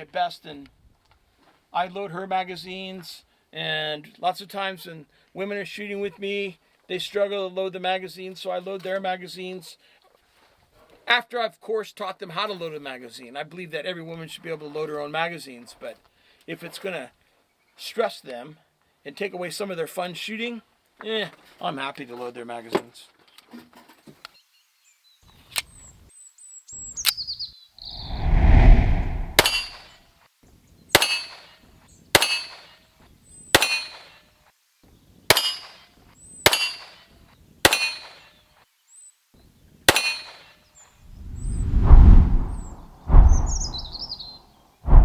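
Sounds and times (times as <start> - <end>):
wind rumbling on microphone: 27.9 - 29.7, 41.1 - 44.3
birds chirping: 42.5 - 44.4.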